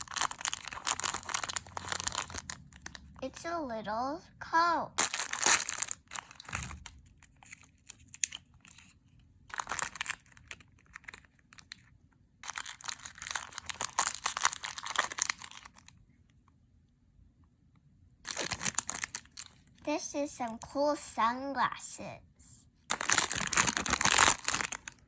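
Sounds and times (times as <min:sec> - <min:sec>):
plastic wrapping crinkling and tearing: 0:00.0 - 0:03.2, 0:05.0 - 0:16.0, 0:18.3 - 0:19.8, 0:22.9 - 0:25.0.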